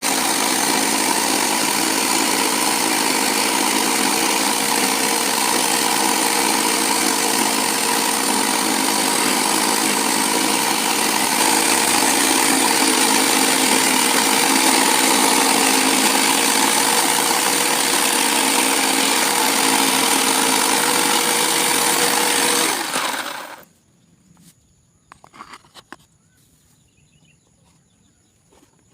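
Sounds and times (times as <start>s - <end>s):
electric jigsaw running: 0.0s - 23.7s
rustles: 23.7s - 28.9s.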